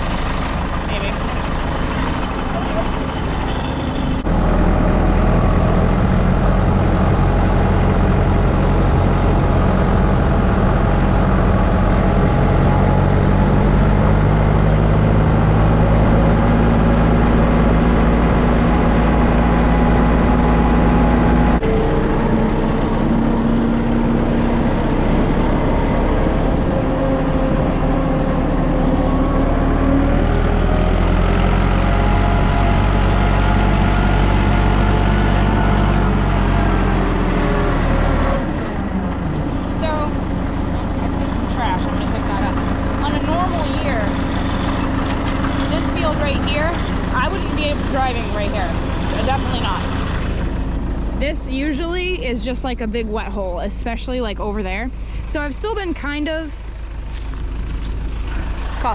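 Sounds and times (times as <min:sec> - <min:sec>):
tractor engine running: 0:00.0 - 0:58.9.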